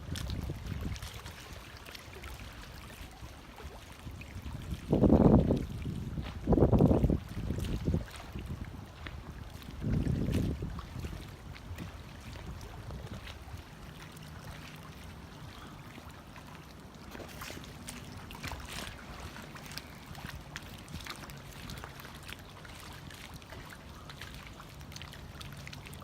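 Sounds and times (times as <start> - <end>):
wind noise: 0.0 - 1.2, 4.4 - 13.6
small waves lapping: 0.0 - 26.0.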